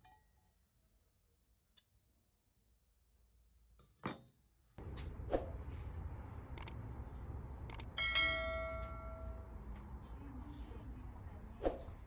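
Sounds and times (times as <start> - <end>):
light clicks: 6.5 - 6.8, 7.6 - 7.9.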